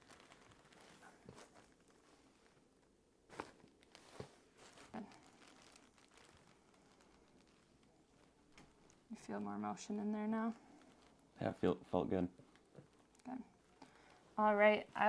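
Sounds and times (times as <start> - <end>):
faint clicks and rustles: 0.0 - 15.0.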